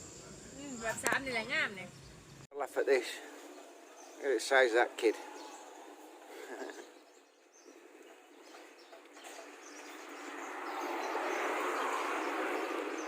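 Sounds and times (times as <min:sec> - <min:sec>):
vehicle rushing along road: 0:08.0 - 0:13.0.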